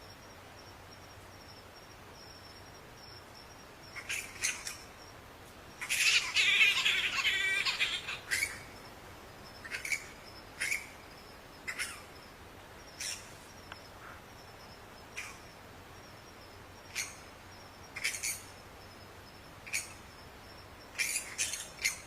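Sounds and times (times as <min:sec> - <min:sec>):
bat squeaks and chittering: 0:05.8 - 0:08.7, 0:09.6 - 0:10.9, 0:11.7 - 0:12.0, 0:13.0 - 0:13.3, 0:16.9 - 0:17.2, 0:18.0 - 0:18.4, 0:21.0 - 0:22.0.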